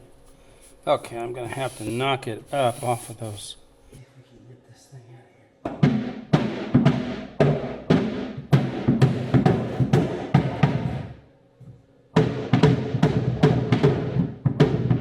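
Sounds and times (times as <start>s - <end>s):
blows on hollow wooden panel: 5.7s - 15.0s.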